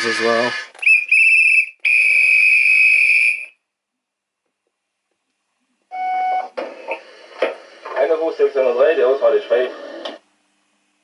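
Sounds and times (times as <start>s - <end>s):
high steady whistle tone: 0.4s - 3.6s.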